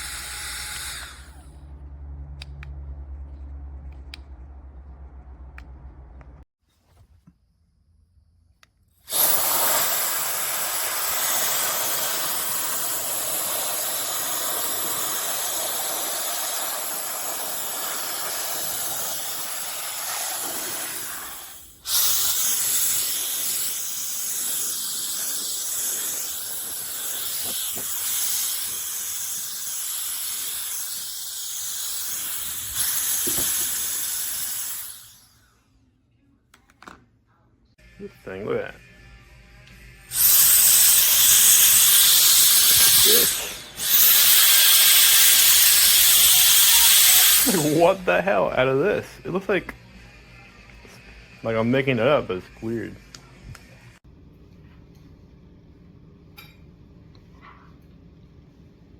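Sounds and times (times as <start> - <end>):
electric air duster running: 0.0 - 1.6, 9.1 - 35.5, 37.9 - 51.6.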